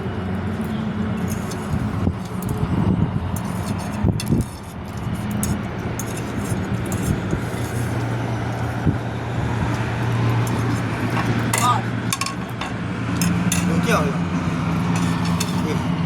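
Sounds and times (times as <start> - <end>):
low mechanical hum: 0.0 - 16.0
small clicks and clinks: 10.1 - 13.7.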